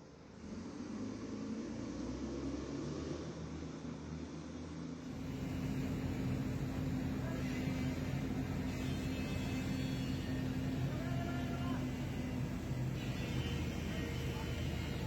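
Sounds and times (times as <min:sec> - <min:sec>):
heavy machinery engine hum: 0:05.0 - 0:15.0.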